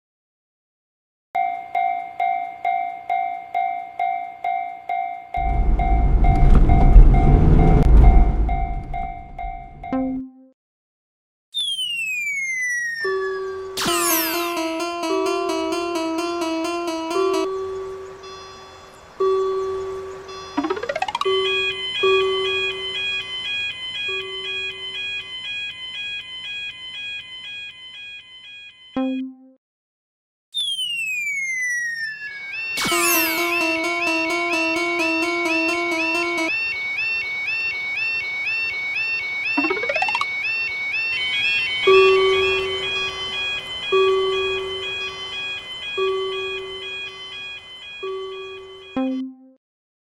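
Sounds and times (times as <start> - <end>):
railroad crossing warning bell: 1.4 - 10.0, 13.1 - 29.0, 32.9 - 49.1
falling whistle-like glide: 5.4 - 9.6, 30.6 - 38.7
lower struck note: 5.4 - 9.9
short low tone: 5.4 - 10.0.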